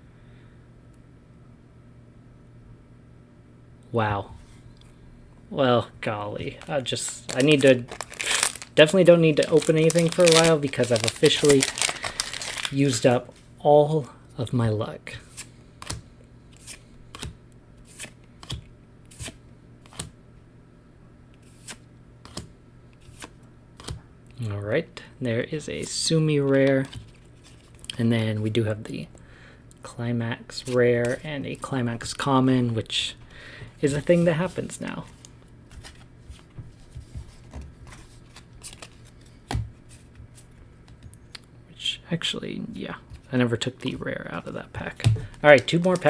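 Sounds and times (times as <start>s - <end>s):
low steady hum: 0.0s - 46.0s
trading cards being flipped: 6.4s - 13.4s, 15.3s - 20.1s, 30.6s - 31.3s, 33.8s - 40.5s, 45.0s - 46.0s.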